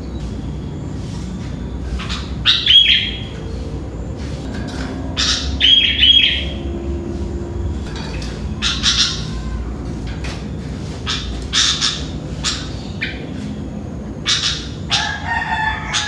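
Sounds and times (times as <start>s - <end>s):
steady low hum: 0.0s - 16.0s
bulbul calling: 1.6s - 9.7s, 11.0s - 15.3s.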